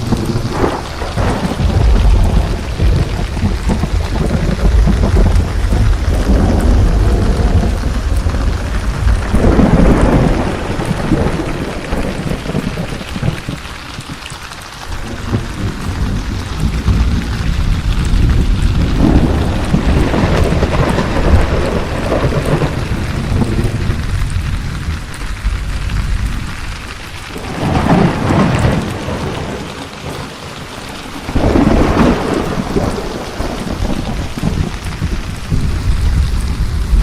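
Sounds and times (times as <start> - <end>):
heavy rain: 0.0 - 37.0
thunder rumbling: 0.0 - 37.0.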